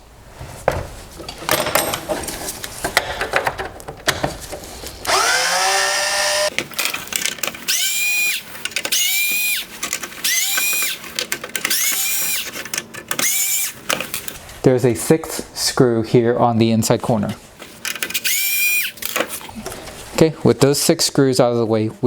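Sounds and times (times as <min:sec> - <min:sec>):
handling clicks and knocks: 0:00.7 - 0:05.1, 0:06.5 - 0:07.7, 0:09.7 - 0:11.8
power driver spinning: 0:05.0 - 0:14.4.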